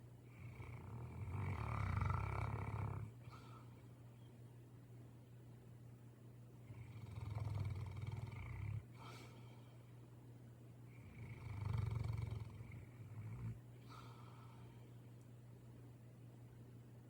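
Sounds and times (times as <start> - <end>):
dog snoring: 0.3 - 3.5, 6.6 - 9.1, 10.9 - 14.2.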